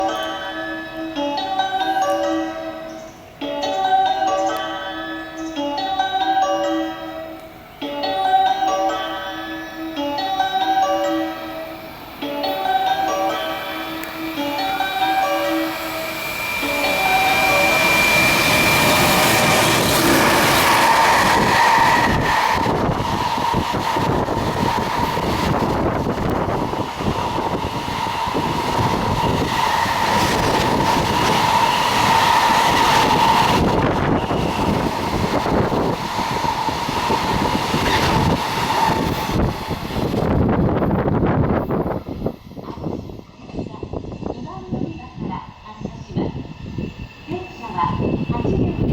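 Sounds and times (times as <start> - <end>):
freight train rumbling: 0.0 - 48.9
steady high tone: 0.0 - 48.9
wheels clacking over rails: 13.0 - 40.5.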